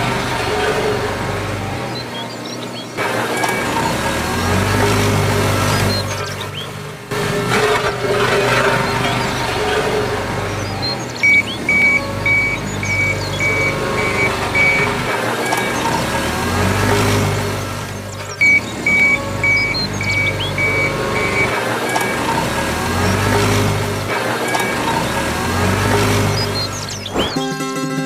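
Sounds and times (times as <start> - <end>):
vehicle engine humming: 0.0 - 27.5
warning beeper short high beeps: 10.6 - 16.0, 18.3 - 22.3.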